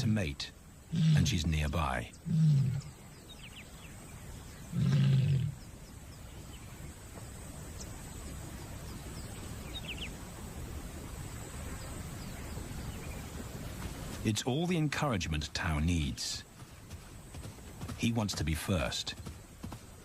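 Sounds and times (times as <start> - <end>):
low outdoor background: 0.0 - 20.0
lion deep call: 0.9 - 1.5, 2.2 - 3.0, 4.7 - 5.6.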